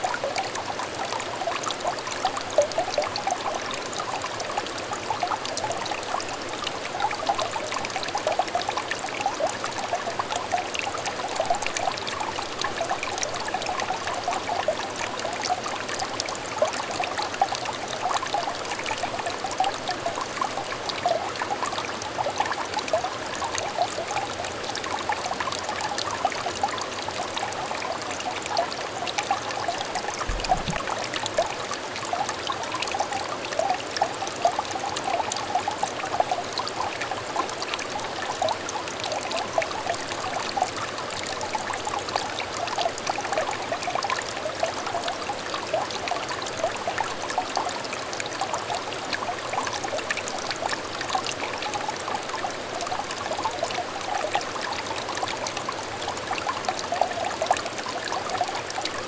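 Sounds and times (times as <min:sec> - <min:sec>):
stream babbling: 0:00.0 - 0:59.0
low thud: 0:30.2 - 0:30.9.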